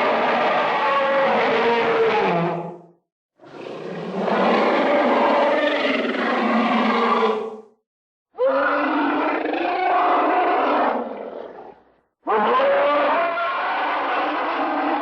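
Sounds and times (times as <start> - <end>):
dinosaur roars: 3.4 - 7.6, 8.4 - 15.0.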